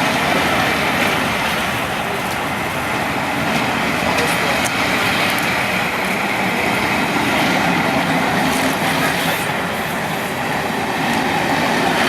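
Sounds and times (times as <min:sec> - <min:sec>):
steam train rolling on rails: 0:00.0 - 0:12.0.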